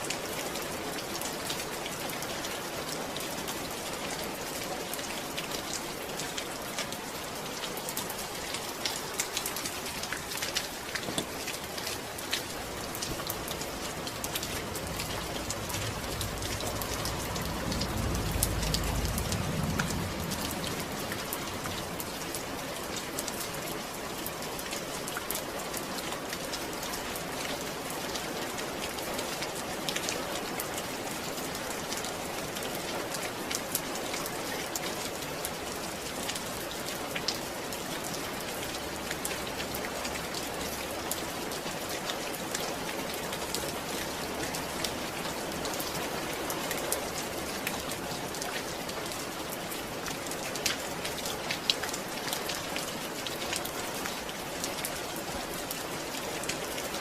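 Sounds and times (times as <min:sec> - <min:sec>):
steady rain: 0:00.0 - 0:57.0
low rumble: 0:12.6 - 0:22.6.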